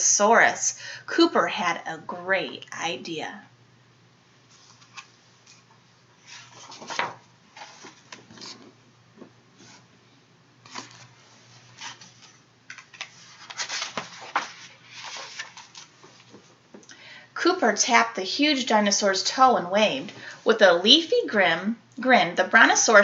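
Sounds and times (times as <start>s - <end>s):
book pages rustling: 4.5s - 9.8s, 10.6s - 16.6s.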